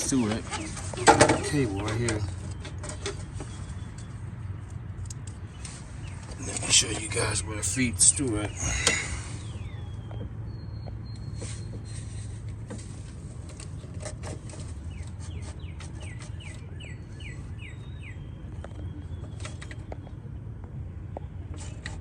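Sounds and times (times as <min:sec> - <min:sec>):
songbird chirping: 0:00.0 - 0:12.3, 0:13.5 - 0:21.8.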